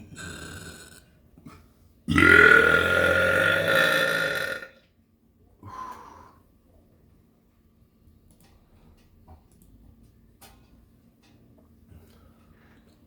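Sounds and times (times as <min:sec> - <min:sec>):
person burping: 0:00.0 - 0:01.1, 0:02.1 - 0:04.8.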